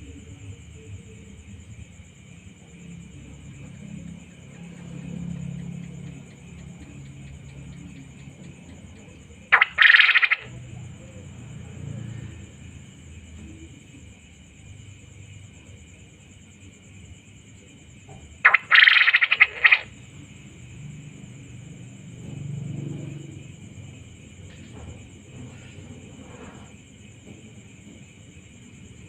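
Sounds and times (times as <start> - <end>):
quail calling: 9.5 - 10.6, 18.4 - 19.9.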